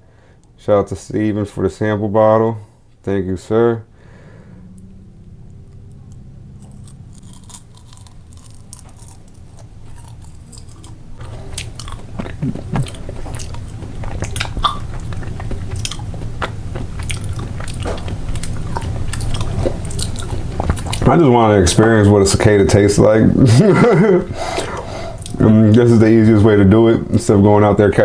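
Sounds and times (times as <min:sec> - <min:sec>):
person chewing crunchy food: 0:05.7 - 0:21.2, 0:24.4 - 0:25.4.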